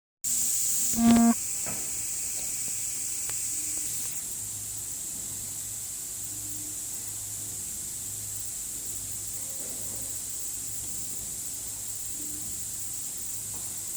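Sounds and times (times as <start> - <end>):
filling machine hissing: 0.3 - 13.9
short tone: 0.9 - 1.4.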